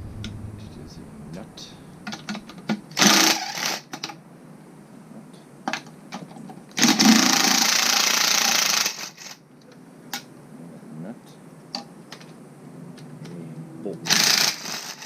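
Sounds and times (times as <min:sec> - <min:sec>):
small power tool spinning: 0:14.1 - 0:15.0.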